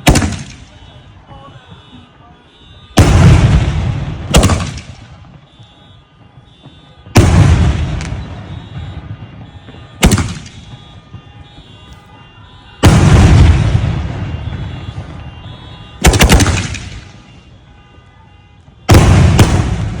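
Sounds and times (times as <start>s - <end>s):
firework bangs with rolling echo: 0.0s - 0.9s, 2.9s - 17.4s, 18.6s - 20.0s
firework cracks: 0.0s - 0.9s, 3.0s - 5.5s, 6.2s - 11.8s, 12.7s - 17.4s, 18.6s - 20.0s.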